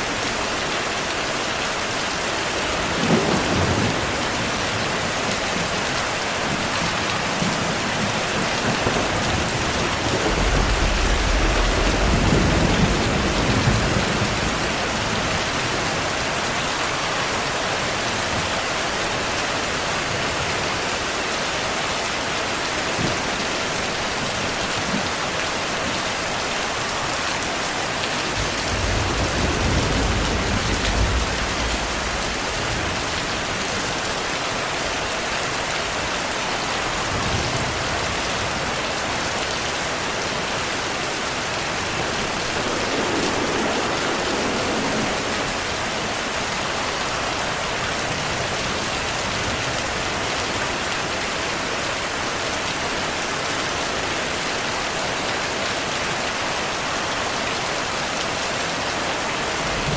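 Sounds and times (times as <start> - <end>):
heavy rain falling: 0.0 - 59.9
distant thunder rumbling: 2.5 - 16.2, 28.3 - 34.0, 40.4 - 49.7.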